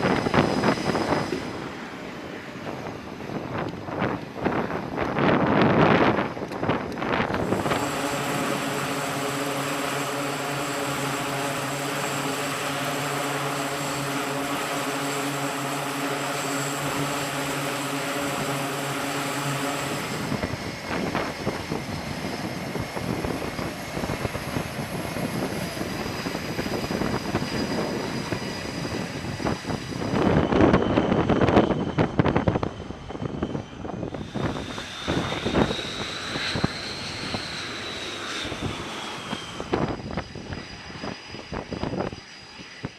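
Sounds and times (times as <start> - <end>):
unsteady rushing noise: 0.0 - 28.4
propeller aircraft engine drone: 0.0 - 42.9.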